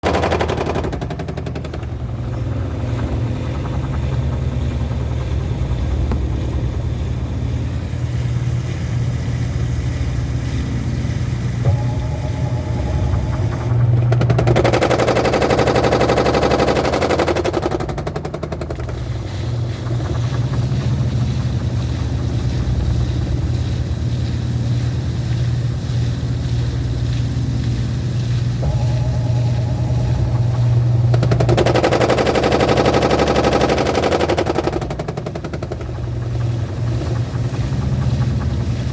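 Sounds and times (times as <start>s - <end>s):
loud rapid rattling and knocking: 0.0s - 6.6s, 11.7s - 23.1s, 28.6s - 38.9s
washing machine spinning: 0.0s - 38.9s.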